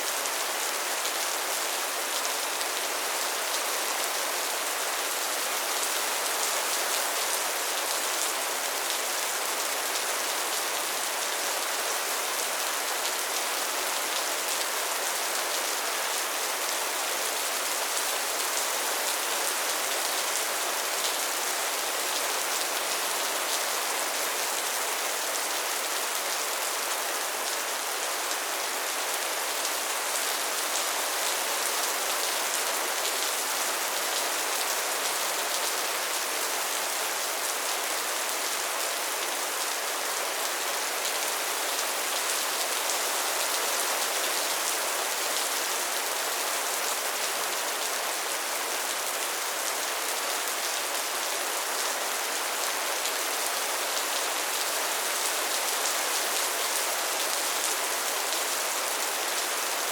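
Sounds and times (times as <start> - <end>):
steady rain: 0.0 - 59.9.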